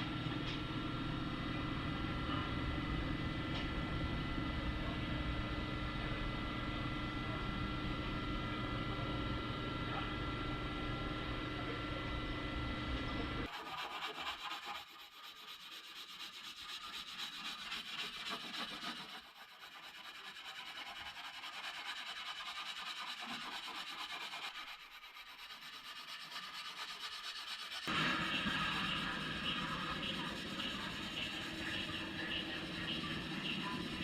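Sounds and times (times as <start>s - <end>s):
machine hum: 0.0s - 13.6s, 27.9s - 34.0s
hand sanding scratchy rasp: 13.5s - 34.0s.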